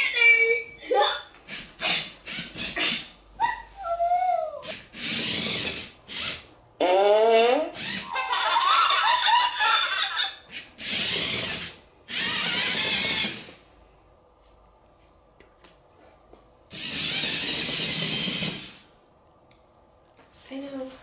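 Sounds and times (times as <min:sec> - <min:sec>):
small electric motors whirring: 0:01.5 - 0:03.1, 0:04.6 - 0:06.5, 0:07.8 - 0:08.1, 0:10.5 - 0:13.6, 0:16.7 - 0:18.9.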